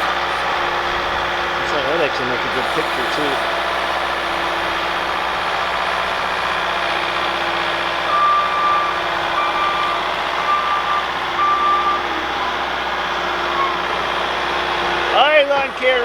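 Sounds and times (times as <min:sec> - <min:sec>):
loader engine running: 0:00.0 - 0:16.0
backup alarm beeping: 0:08.0 - 0:14.2.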